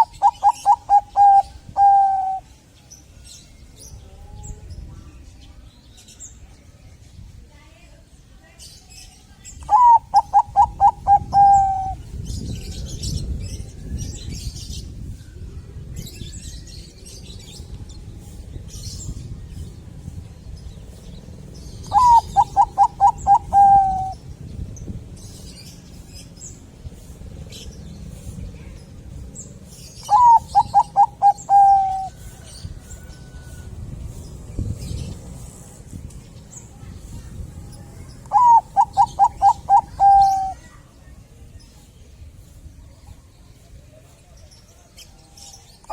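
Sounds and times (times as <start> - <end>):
dove cooing: 0.0 - 2.5, 9.7 - 12.0, 21.9 - 24.2, 30.1 - 32.4, 38.3 - 40.6.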